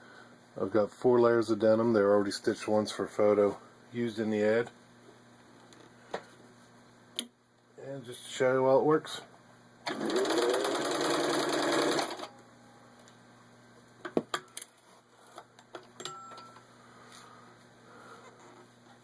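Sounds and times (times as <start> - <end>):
sewing machine running fast: 9.8 - 12.3.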